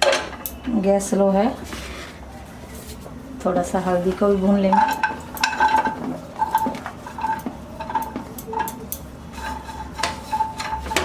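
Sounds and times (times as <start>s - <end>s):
metal utensil scraping a pan: 3.8s - 11.0s.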